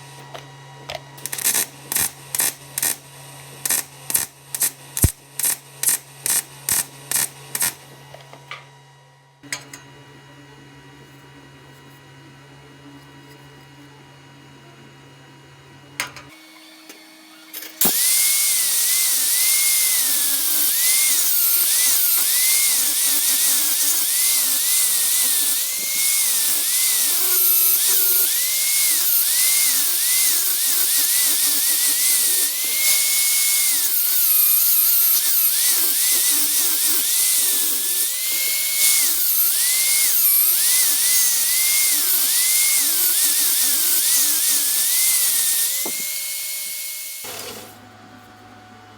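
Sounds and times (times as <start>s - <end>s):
angle grinder grinding steel: 16.3s - 47.8s.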